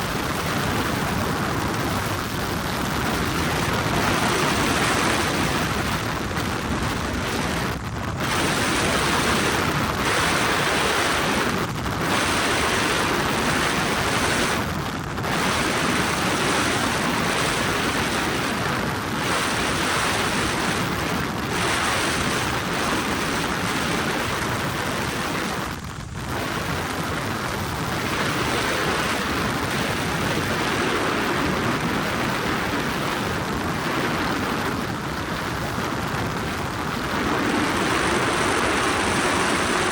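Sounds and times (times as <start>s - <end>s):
helicopter engine and rotor: 0.0s - 14.5s, 27.5s - 39.9s.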